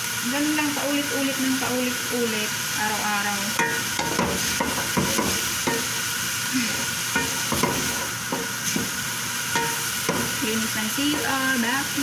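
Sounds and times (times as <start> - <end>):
food sizzling in a frying pan: 0.0 - 12.0
spatula scraping a pan: 3.6 - 11.7.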